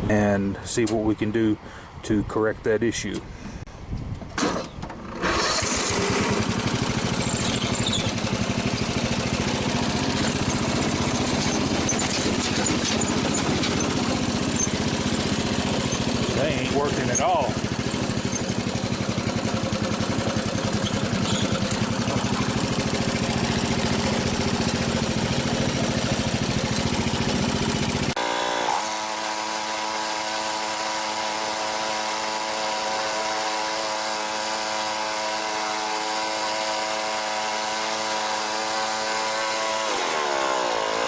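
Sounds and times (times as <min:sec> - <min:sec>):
lawn tractor engine running: 0:04.4 - 0:41.0
steady buzzing drone: 0:27.8 - 0:41.0.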